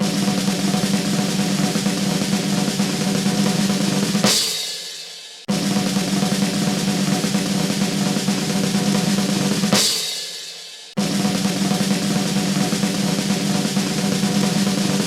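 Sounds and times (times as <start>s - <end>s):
loud snare drum hit: 0.0s - 15.0s
snare drum roll: 10.9s - 15.0s.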